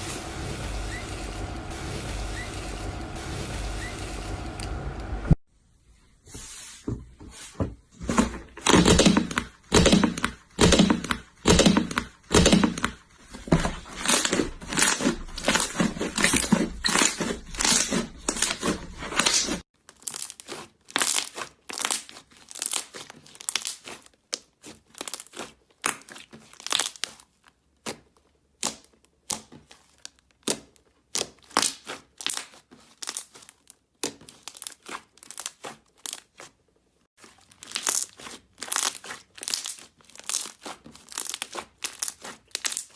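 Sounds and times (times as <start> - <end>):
slime crackling and popping: 14.0 - 28.0, 28.6 - 36.6, 37.2 - 42.9.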